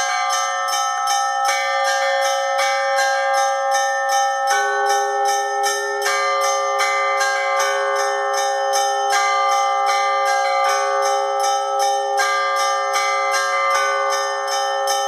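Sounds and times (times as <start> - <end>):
small bells struck rapidly: 0.0 - 15.0
sustained hum of large bells: 0.0 - 15.0.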